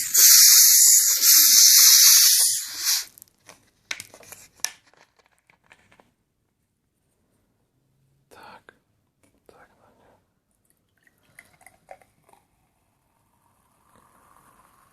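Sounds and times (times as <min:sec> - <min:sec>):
gas hissing from plastic bottle: 0:00.0 - 0:03.2.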